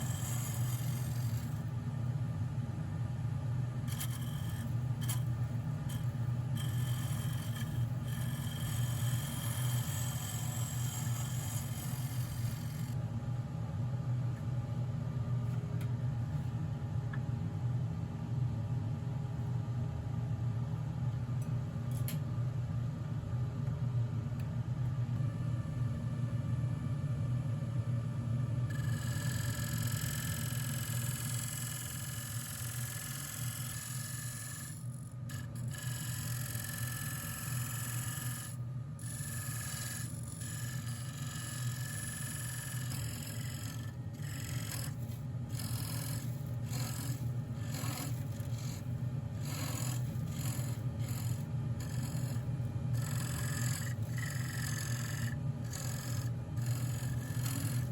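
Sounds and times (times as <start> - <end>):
wood lathe humming: 0.0 - 1.6, 3.9 - 13.0, 28.7 - 57.9.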